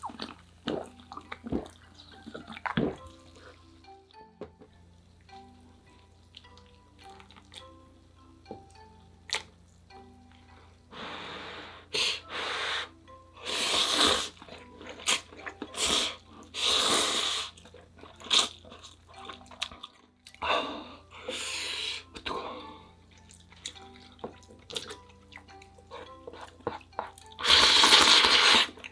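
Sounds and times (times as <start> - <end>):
chewing and mouth clicks: 0.0 - 3.6, 6.0 - 7.8, 8.7 - 9.9, 14.3 - 15.8, 17.5 - 20.4, 23.0 - 28.9
soft background music: 0.0 - 28.9
person slurping noodles: 11.0 - 18.9, 26.0 - 28.9.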